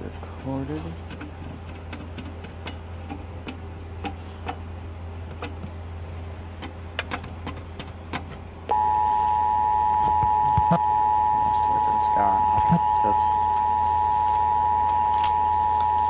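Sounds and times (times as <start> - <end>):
steady low hum: 0.0 - 16.0
two-tone alert signal: 8.7 - 16.0.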